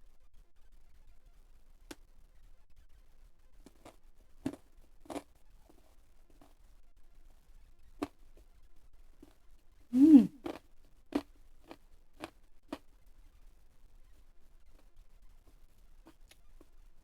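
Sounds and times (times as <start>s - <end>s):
person chewing crispy food: 3.7s - 5.3s, 10.4s - 12.8s
mouth clicks: 10.0s - 10.6s.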